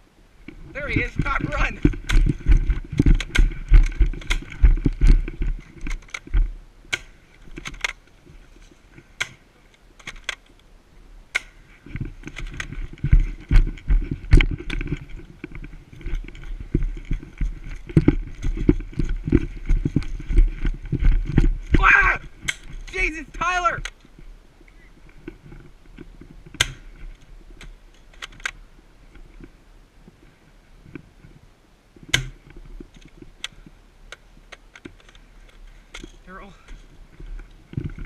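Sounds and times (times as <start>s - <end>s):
gear rattling against camera: 0.4s - 10.6s, 11.4s - 29.6s, 30.8s - 38.0s
running footsteps: 0.5s - 6.5s, 11.9s - 24.2s
sharp clicks and snaps: 1.8s - 5.2s.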